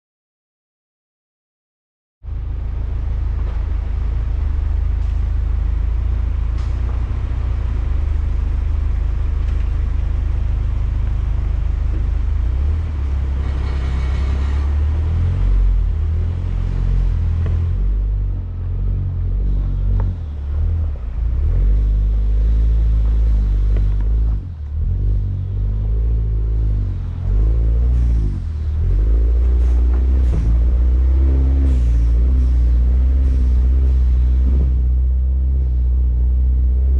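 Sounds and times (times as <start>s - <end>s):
engine and road rumble: 2.2s - 36.9s.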